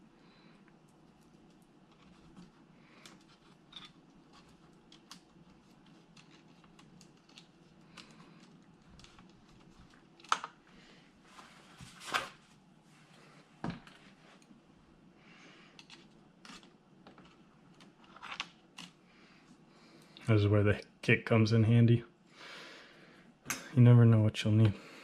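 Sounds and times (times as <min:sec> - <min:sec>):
low steady hum: 0:00.0 - 0:25.0
small plastic parts clicking: 0:00.9 - 0:10.6.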